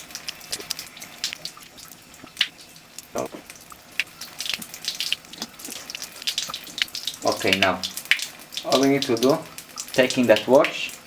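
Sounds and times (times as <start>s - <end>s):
tap running water into sink: 0.0s - 11.0s.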